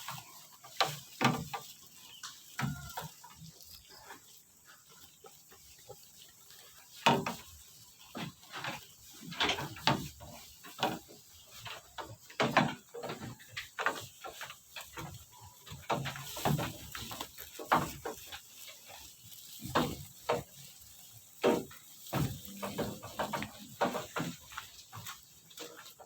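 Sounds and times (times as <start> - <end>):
goats bleating: 2.6 - 4.0.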